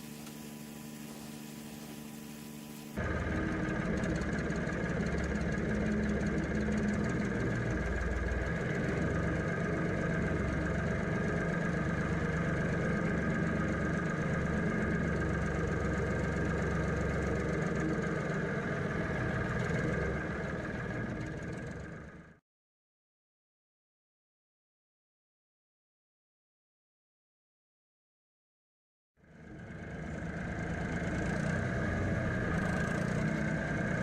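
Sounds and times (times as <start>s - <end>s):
tractor engine running: 0.0s - 22.4s, 29.3s - 34.0s.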